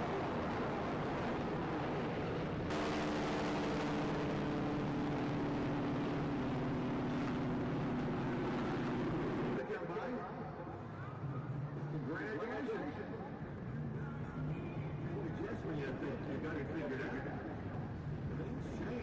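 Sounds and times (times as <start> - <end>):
jet aircraft engine: 0.0 - 9.6
droning hum of steady tones: 0.0 - 19.0.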